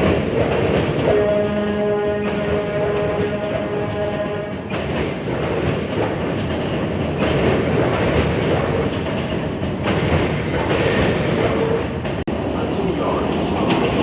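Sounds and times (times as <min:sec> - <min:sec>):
subway train wheels rumbling on rail: 0:00.0 - 0:14.0.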